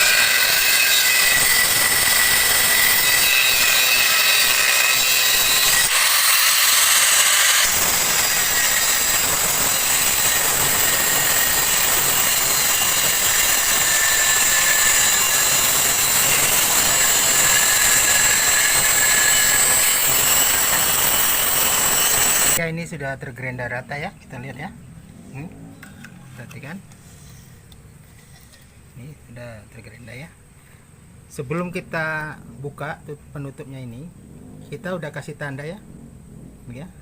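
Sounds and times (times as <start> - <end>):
angle grinder grinding steel: 0.0 - 22.6.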